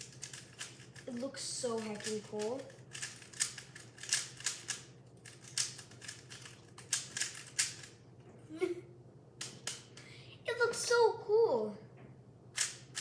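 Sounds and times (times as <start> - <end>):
puzzle cube layers clicking: 2.9 - 7.9.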